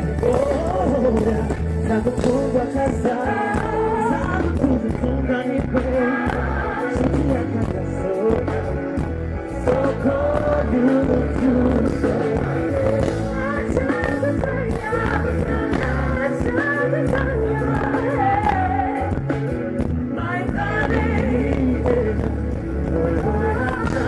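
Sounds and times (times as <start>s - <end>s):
bass line: 0.0s - 24.0s
person singing: 0.0s - 24.0s.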